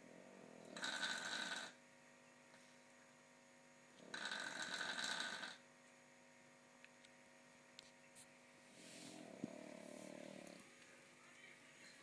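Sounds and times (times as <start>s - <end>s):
dog snoring: 0.0s - 1.8s, 4.0s - 5.6s, 9.0s - 10.6s.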